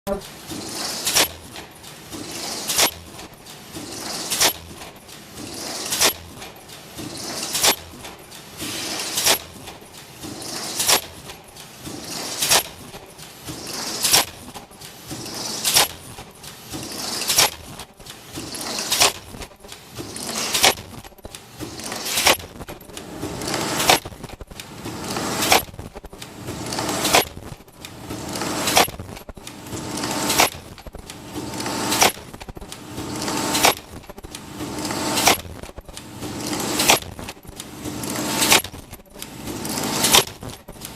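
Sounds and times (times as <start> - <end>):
machine whirring and shuffling: 0.1 - 40.9
sharp mechanical click: 26.7 - 33.9, 34.6 - 40.9.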